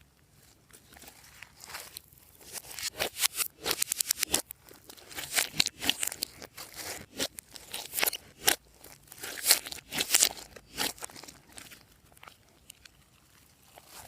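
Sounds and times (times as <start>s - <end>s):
slime squeezed by hand: 1.0s - 11.9s.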